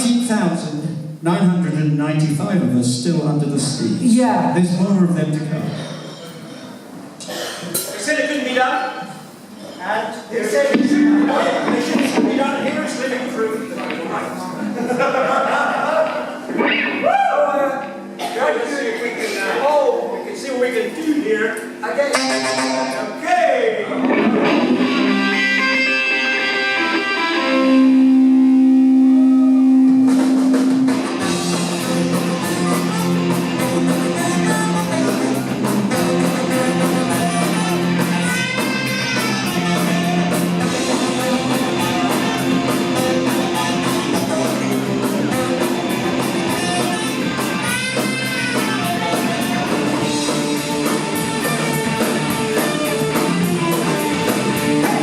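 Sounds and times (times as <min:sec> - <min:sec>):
punk rock band playing live: 0:10.7 - 0:13.0, 0:23.9 - 0:55.0.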